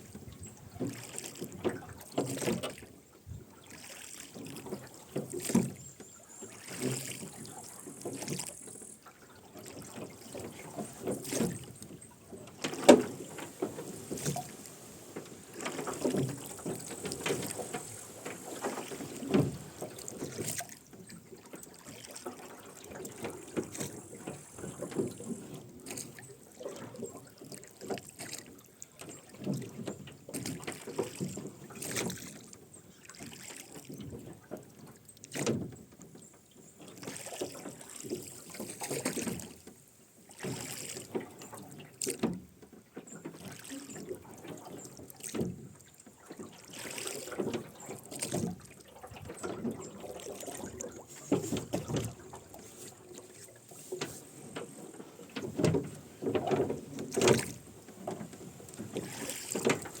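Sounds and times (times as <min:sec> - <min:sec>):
oars splashing and dripping: 0:00.0 - 1:00.0.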